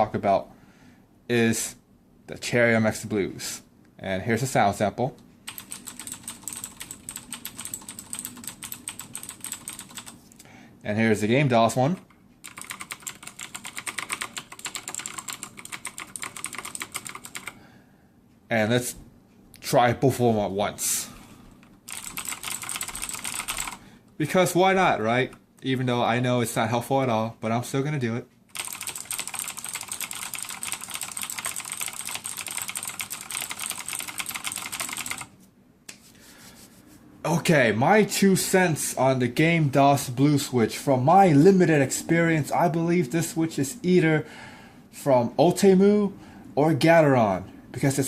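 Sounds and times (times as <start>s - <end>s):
rapid mechanical keyboard typing: 5.5s - 10.2s, 11.9s - 17.6s, 21.8s - 25.4s, 28.5s - 35.3s.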